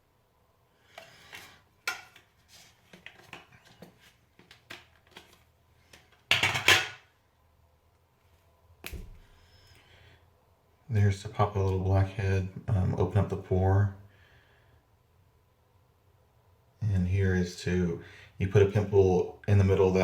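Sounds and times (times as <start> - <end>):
metal tin rattle: 6.3 - 7.0.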